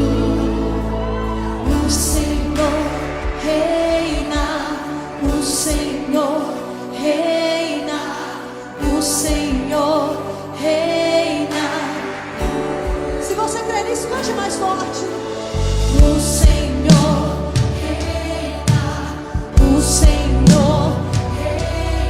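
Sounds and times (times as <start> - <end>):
person singing: 0.0 - 22.0
band with keyboard chords: 8.8 - 22.0.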